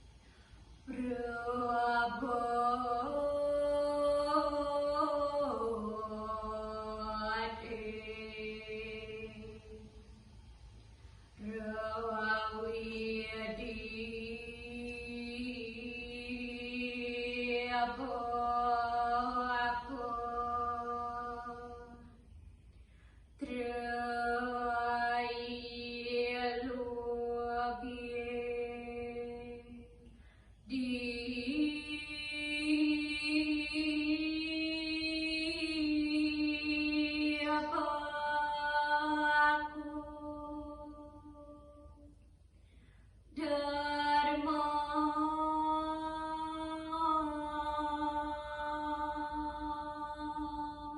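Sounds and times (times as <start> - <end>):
solo voice chanting: 11.4 - 22.2.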